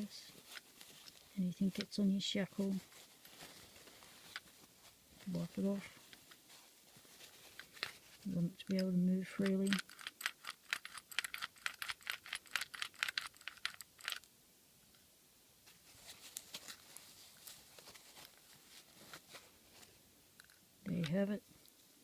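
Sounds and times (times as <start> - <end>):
padlock shackle clicking and rattling: 9.4 - 14.3.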